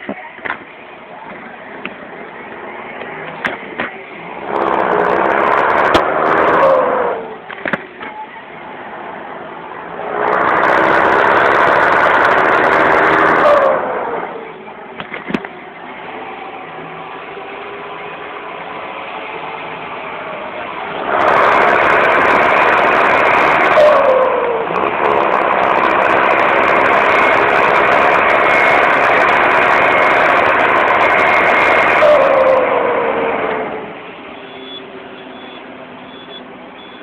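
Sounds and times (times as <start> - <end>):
tractor diesel engine revving: 0.0 - 37.0
turbo whistle: 34.3 - 37.0.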